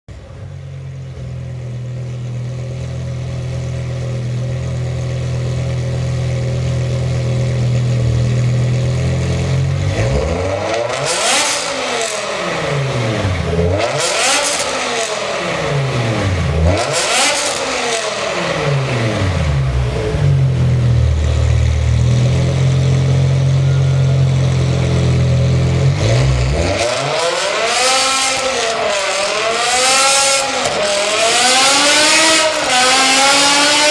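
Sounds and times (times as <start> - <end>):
car engine idling and revving: 0.1 - 33.9.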